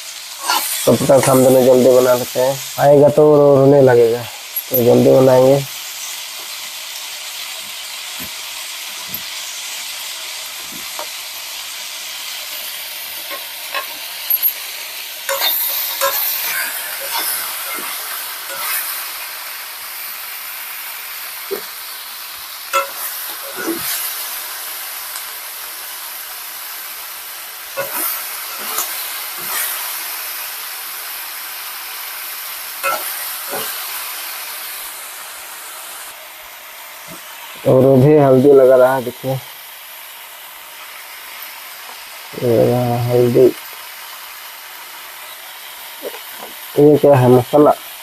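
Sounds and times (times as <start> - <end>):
skin sizzling in hot oil: 0.0 - 48.0
spatula scraping a pan: 0.4 - 1.9, 12.5 - 14.6, 15.3 - 19.3, 22.7 - 24.5, 27.7 - 30.2, 32.8 - 34.2.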